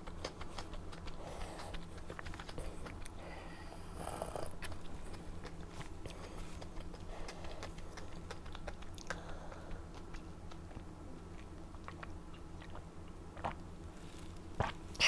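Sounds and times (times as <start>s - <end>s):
wet mouth clicks: 0.0s - 3.2s
chewing and biting: 0.0s - 15.0s.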